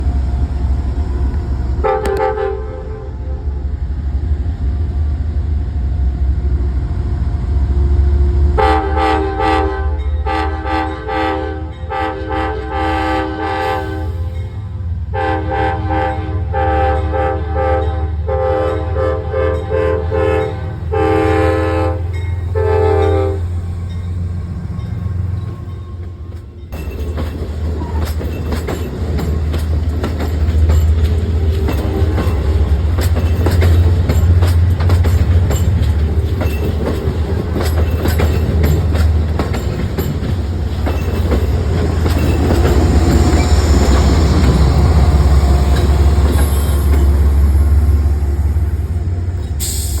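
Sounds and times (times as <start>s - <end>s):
diesel locomotive rumbling: 0.0s - 50.0s
wheels clicking over rail joints: 24.7s - 47.5s.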